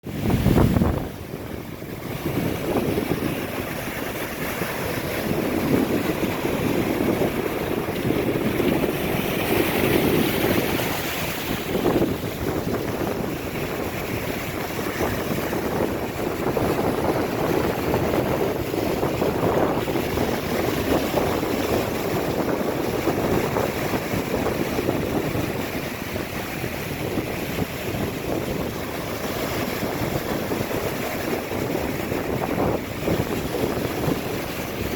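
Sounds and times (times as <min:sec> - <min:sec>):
surf breaking on beach: 0:00.0 - 0:34.9
wind buffeting microphone: 0:00.0 - 0:34.9.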